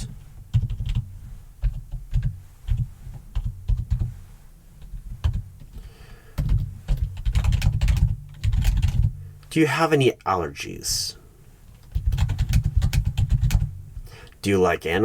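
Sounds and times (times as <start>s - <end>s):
typing on computer keyboard: 0.5s - 4.1s, 5.2s - 5.4s, 6.4s - 9.1s, 11.8s - 13.7s.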